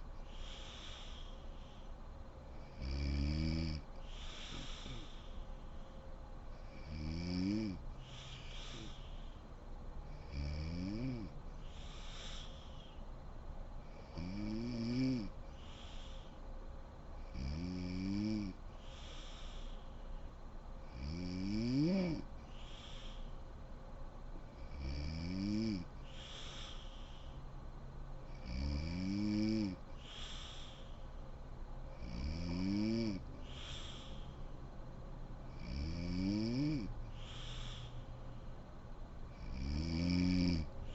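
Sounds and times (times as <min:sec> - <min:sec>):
breathy hiss of air: 0:00.0 - 0:10.5, 0:11.1 - 0:14.4, 0:15.0 - 0:17.5, 0:18.6 - 0:21.2, 0:21.8 - 0:39.8, 0:40.6 - 0:40.9
breathy out-breath: 0:00.2 - 0:02.0, 0:04.0 - 0:06.1, 0:08.0 - 0:09.6, 0:11.5 - 0:13.0, 0:15.4 - 0:16.4, 0:18.7 - 0:20.2, 0:22.4 - 0:23.5, 0:26.0 - 0:27.4, 0:30.0 - 0:31.2, 0:33.4 - 0:34.6, 0:37.1 - 0:38.6
woman snoring: 0:02.6 - 0:05.3, 0:06.6 - 0:09.2, 0:10.1 - 0:12.9, 0:13.9 - 0:16.2, 0:17.2 - 0:19.6, 0:20.9 - 0:23.3, 0:24.6 - 0:27.3, 0:28.3 - 0:30.9, 0:31.9 - 0:34.2, 0:35.5 - 0:38.0, 0:39.3 - 0:40.9.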